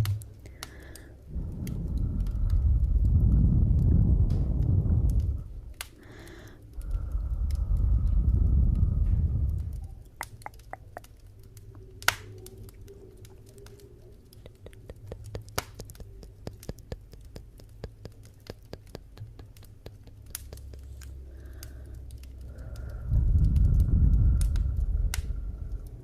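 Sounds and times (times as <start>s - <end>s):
low rumble: 0.0s - 10.5s, 19.1s - 26.0s
wood fire crackling: 0.0s - 26.0s.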